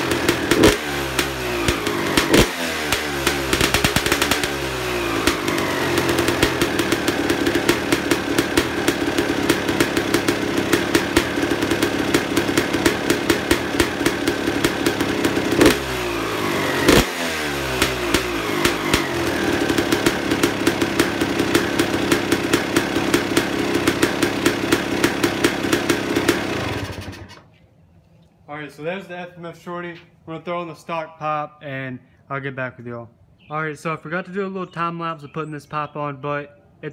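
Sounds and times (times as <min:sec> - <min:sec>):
engine revving: 0:00.0 - 0:27.4
dirt bike engine idling: 0:00.0 - 0:27.5.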